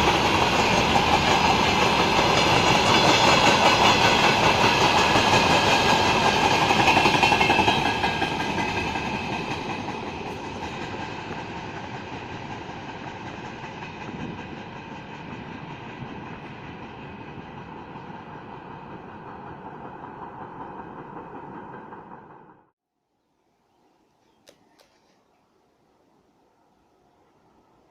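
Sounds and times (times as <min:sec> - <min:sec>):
freight train wheels clattering: 0:00.0 - 0:22.5.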